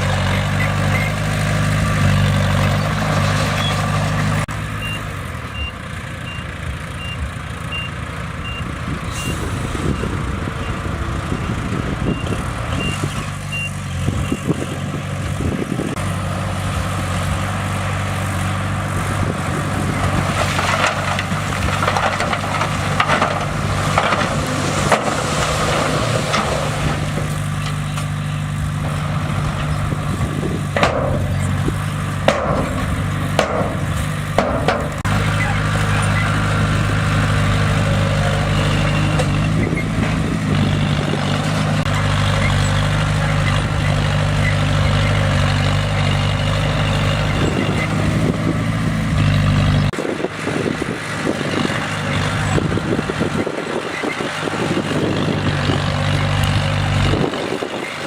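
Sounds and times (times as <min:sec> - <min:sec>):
bulldozer diesel engine: 0:00.0 - 0:58.0
reversing alarm beeps: 0:04.8 - 0:10.8, 0:12.1 - 0:14.5
metal clanks and scraping: 0:16.8 - 0:50.0.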